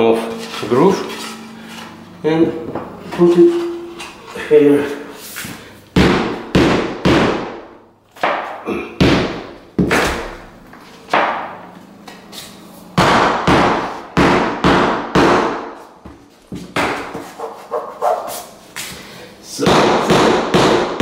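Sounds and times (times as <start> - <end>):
sharp knocks on floor board: 16.6 - 17.3.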